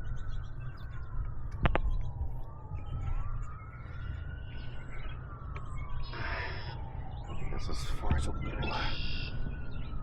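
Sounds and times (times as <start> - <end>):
wailing siren: 0.0 - 10.0.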